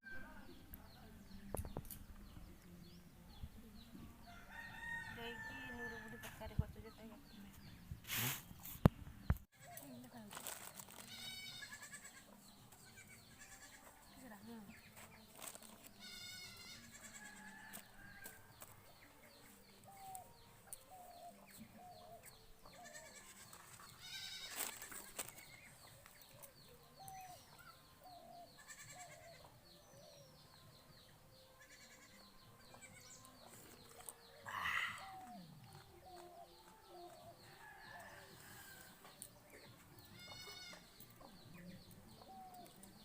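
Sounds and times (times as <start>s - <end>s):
goat bleating: 16.0s - 17.2s, 40.2s - 40.8s
animal calls and bird chirps: 25.6s - 30.6s, 31.6s - 38.8s.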